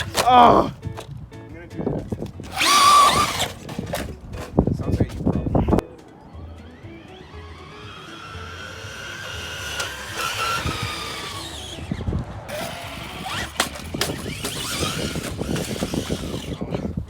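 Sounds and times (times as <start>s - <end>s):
car clattering over hard ground: 2.0s - 5.4s, 7.2s - 16.8s
rc car electric motor whining: 2.4s - 4.1s, 6.7s - 16.9s.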